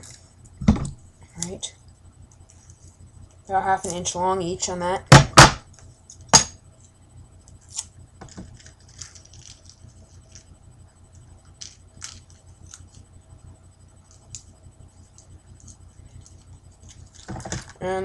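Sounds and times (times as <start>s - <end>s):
low hum: 0.0s - 18.0s
adhesive tape crinkling: 7.5s - 10.6s.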